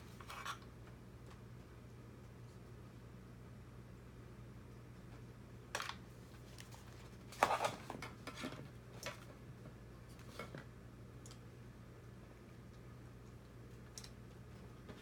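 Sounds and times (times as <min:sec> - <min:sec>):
low steady hum: 0:00.0 - 0:15.0
plastic parts clicking and clattering: 0:05.8 - 0:06.0.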